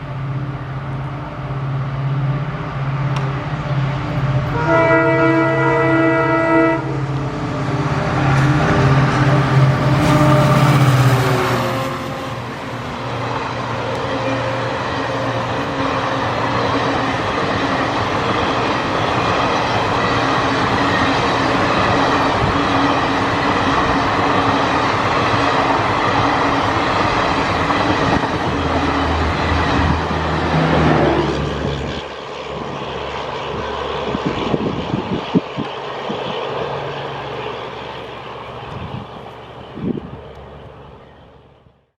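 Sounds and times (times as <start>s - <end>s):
diesel locomotive engine running hard: 0.0s - 42.0s
locomotive horn chord: 4.5s - 7.1s, 8.2s - 12.8s
low drone: 6.6s - 41.9s.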